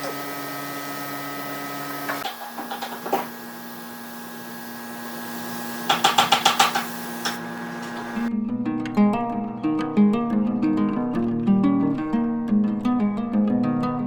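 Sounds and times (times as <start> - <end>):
power tool motor humming: 0.0 - 8.3
rattle of sharp clicks: 5.6 - 8.3
knocks: 5.8 - 8.1.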